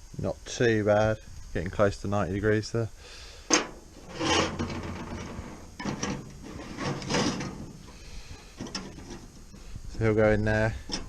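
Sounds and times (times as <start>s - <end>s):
sheet steel scraping against metal: 3.5s - 9.7s, 10.7s - 11.0s.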